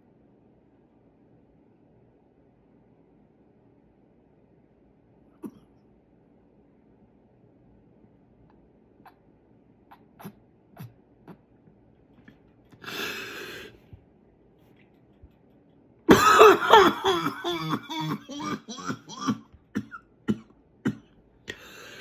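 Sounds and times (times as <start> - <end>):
person coughing and clearing throat: 16.1 - 21.6.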